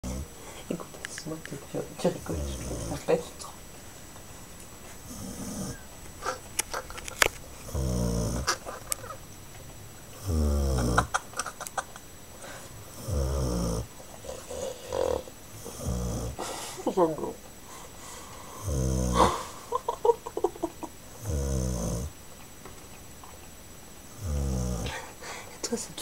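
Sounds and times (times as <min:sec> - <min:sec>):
dog snoring: 0:00.0 - 0:00.3, 0:02.0 - 0:03.2, 0:05.0 - 0:06.4, 0:07.6 - 0:08.7, 0:10.2 - 0:11.2, 0:12.9 - 0:16.8, 0:18.2 - 0:19.6, 0:21.1 - 0:22.2, 0:24.1 - 0:25.1.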